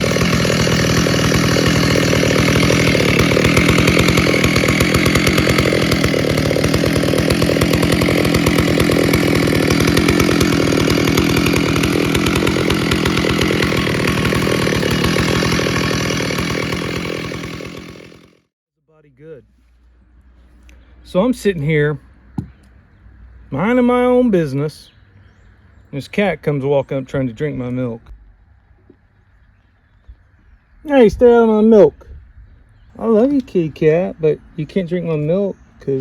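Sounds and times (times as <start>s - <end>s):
chainsaw running: 0.0s - 18.5s.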